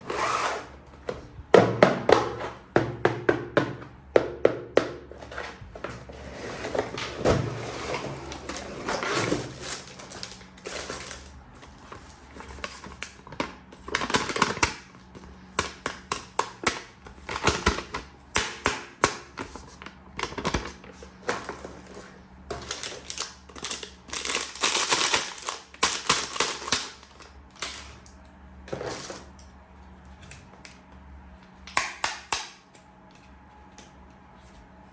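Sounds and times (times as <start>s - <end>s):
packaging rustling: 6.6s - 14.7s, 19.4s - 27.8s.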